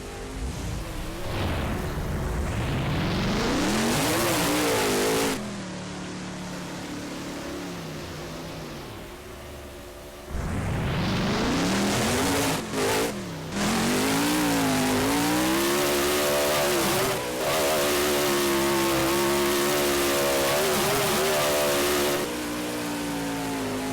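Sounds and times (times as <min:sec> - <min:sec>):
truck engine revving hard: 0:02.4 - 0:05.5, 0:10.3 - 0:22.5.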